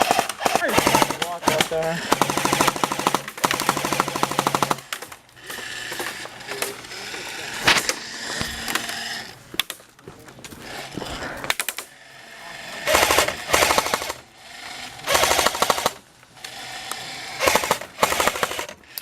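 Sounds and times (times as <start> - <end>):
airsoft guns firing bursts: 0.0 - 6.8, 12.8 - 18.9.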